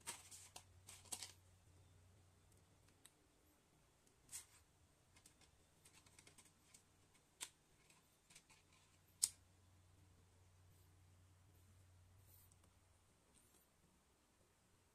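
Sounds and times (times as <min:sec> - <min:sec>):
faint low hum: 0:00.0 - 0:14.9.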